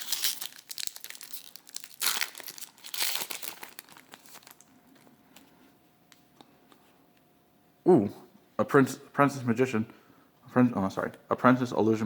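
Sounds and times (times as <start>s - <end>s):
card packaging crinkling: 0.0s - 5.2s.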